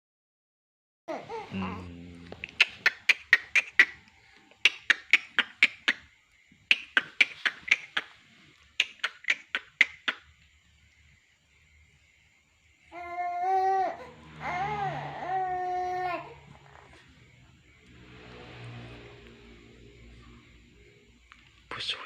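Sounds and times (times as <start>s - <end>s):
baby vocalizing: 1.1s - 4.0s, 4.6s - 6.1s, 6.7s - 8.2s, 8.8s - 10.2s, 12.9s - 17.0s
baby giggling rapidly: 2.5s - 4.0s, 6.7s - 8.2s.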